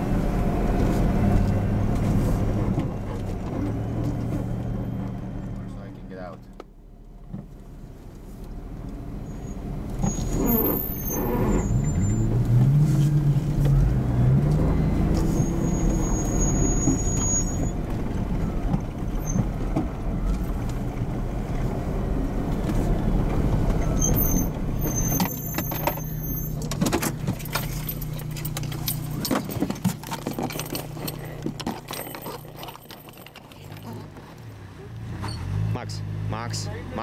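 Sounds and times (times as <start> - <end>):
engine running and revving: 0.0 - 6.4, 8.2 - 37.0
high squeaks: 9.2 - 12.4, 14.8 - 17.8, 23.8 - 34.4
knocks and rattles: 24.9 - 34.4.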